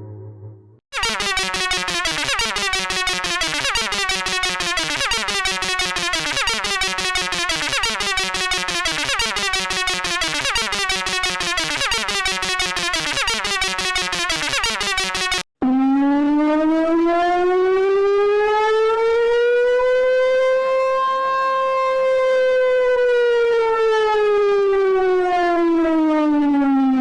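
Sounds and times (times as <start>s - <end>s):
pulsing synthesized tone: 0.0s - 15.4s.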